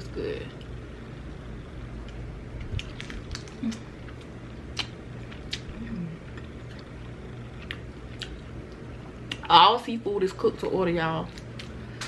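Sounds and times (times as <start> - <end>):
close chewing: 2.1 - 9.5.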